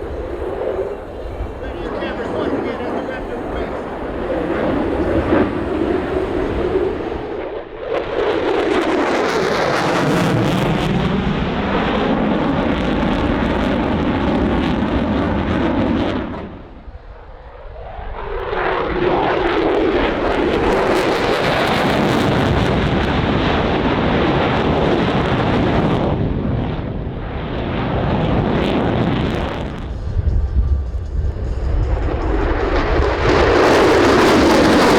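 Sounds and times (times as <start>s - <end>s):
jet flying by: 0.0s - 34.9s.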